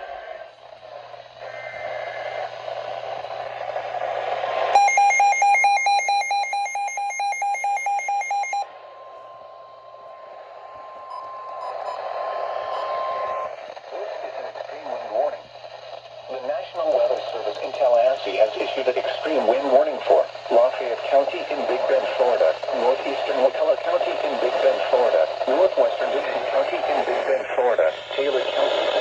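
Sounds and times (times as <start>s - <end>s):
radio static: 0.1s - 4.7s, 10.0s - 29.0s
long steady alert tone: 4.7s - 12.0s
two-pitch electronic alarm beeping: 4.8s - 8.7s.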